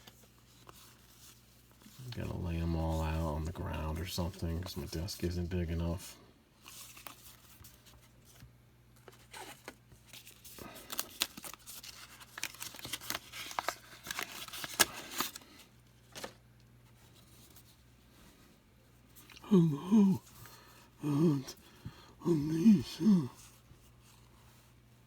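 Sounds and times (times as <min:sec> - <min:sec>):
man's voice: 0:02.0 - 0:06.1, 0:19.4 - 0:20.2, 0:21.0 - 0:21.6, 0:22.2 - 0:23.4
wrapper crinkling: 0:09.1 - 0:16.4.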